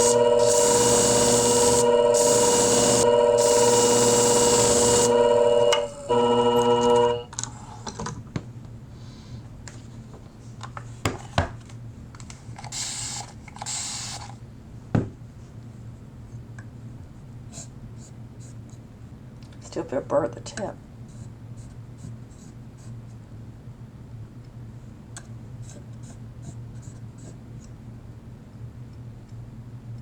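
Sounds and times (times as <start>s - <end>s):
sharpening machine humming and grinding: 0.0s - 7.3s.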